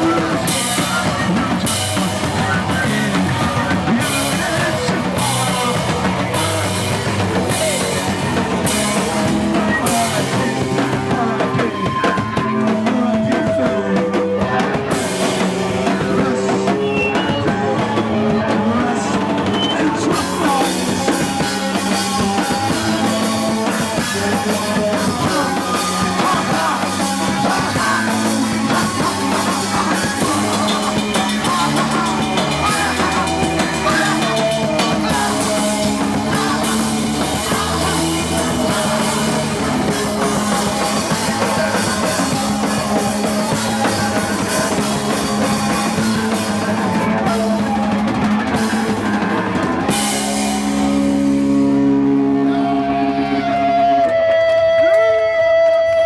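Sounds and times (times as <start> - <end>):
drum kit fast beat: 0.0 - 52.5
rock band playing live: 0.0 - 56.0.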